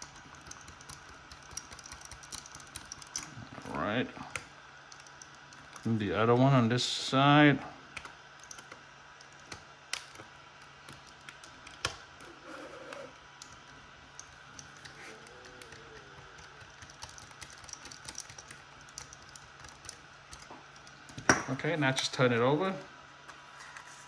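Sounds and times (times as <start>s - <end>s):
screwdriver clicks and ticks: 0.0s - 3.3s
faint steady hum: 0.0s - 24.0s.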